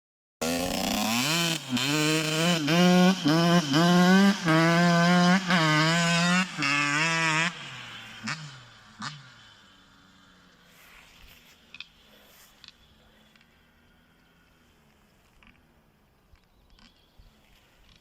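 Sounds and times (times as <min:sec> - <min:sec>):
two-stroke engine revving: 0:00.4 - 0:10.6.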